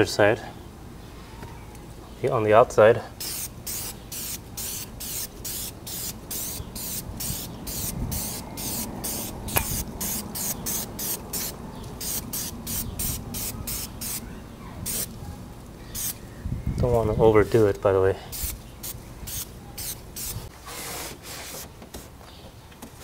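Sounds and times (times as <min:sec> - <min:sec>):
aerosol spray hissing bursts: 0:03.2 - 0:14.2, 0:18.3 - 0:21.6.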